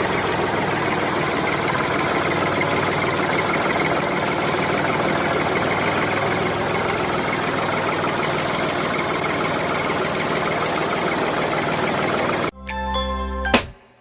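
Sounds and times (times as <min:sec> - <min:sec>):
engine running with chatter: 0:00.0 - 0:12.5.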